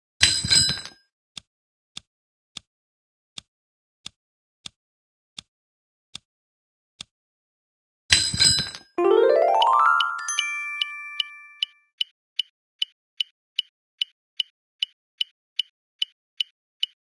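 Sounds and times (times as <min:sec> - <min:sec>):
rising bell-like notes: 0:09.0 - 0:11.6.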